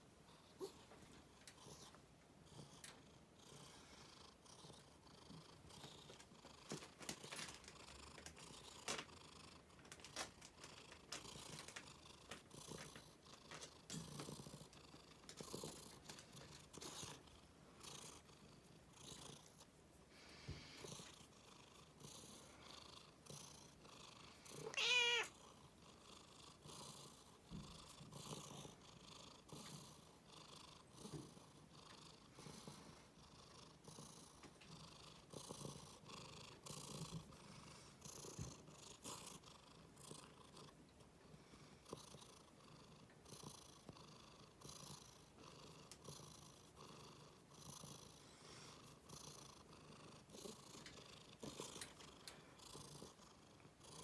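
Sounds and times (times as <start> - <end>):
cat purring: 0.2 - 54.0
cat crying: 24.6 - 25.3.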